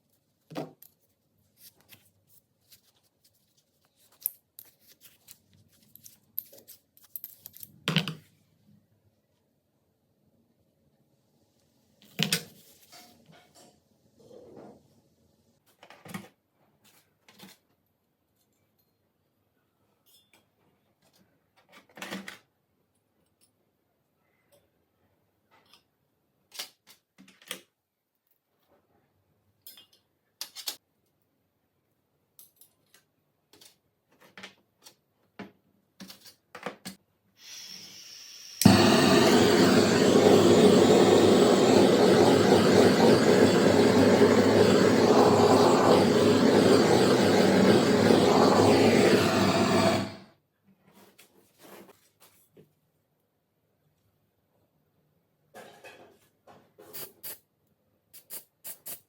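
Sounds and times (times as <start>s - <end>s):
power tool running: 37.4s - 50.2s.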